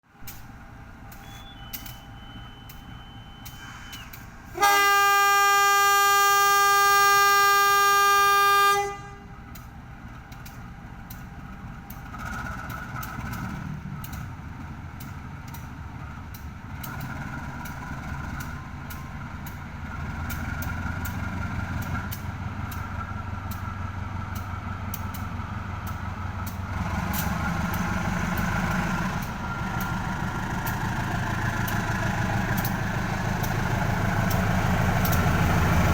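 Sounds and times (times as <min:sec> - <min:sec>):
train engine and rolling noise: 0:00.0 - 0:35.9
locomotive horn blast: 0:01.2 - 0:09.4.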